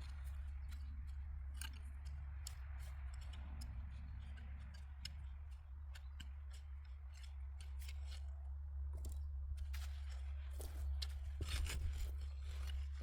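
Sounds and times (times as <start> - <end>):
small clicks and crackles: 0.0 - 8.4
digging through soil: 2.9 - 13.0.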